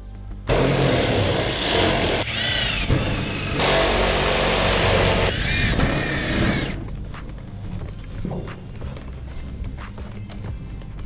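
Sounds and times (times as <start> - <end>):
power drill driving screws: 0.5 - 6.8.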